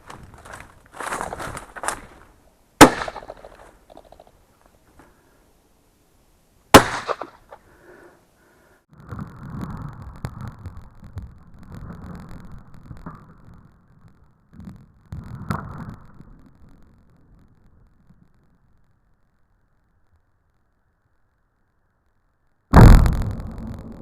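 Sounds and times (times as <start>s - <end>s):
rustling through brush: 0.0s - 5.2s
shotgun shots: 2.8s - 3.7s, 6.7s - 7.6s.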